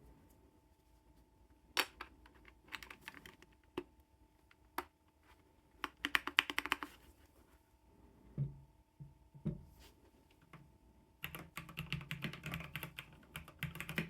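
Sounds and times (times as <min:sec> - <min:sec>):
mechanical keyboard typing: 0:02.7 - 0:03.5, 0:05.8 - 0:06.9, 0:11.2 - 0:14.0.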